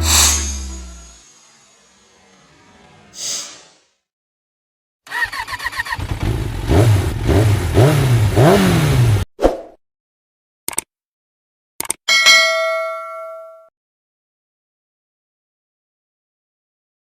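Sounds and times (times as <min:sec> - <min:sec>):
motorcycle engine cranking and revving: 0:00.0 - 0:01.8, 0:05.1 - 0:09.3
short hit: 0:00.0 - 0:02.5
short whoosh: 0:00.0 - 0:04.0.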